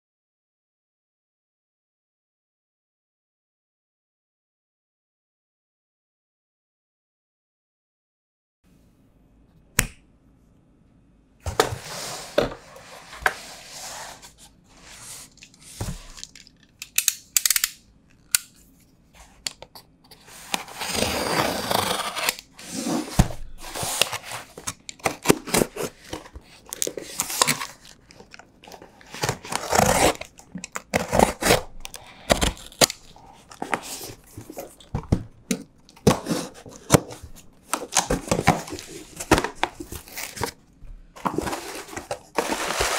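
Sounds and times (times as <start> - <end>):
packaging tearing and crinkling: 23.6 - 34.9.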